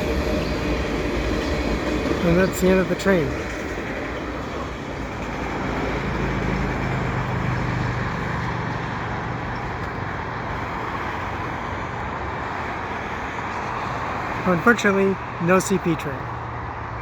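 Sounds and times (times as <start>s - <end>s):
freight train rumble: 0.0s - 17.0s
roar of passing traffic: 3.7s - 17.0s.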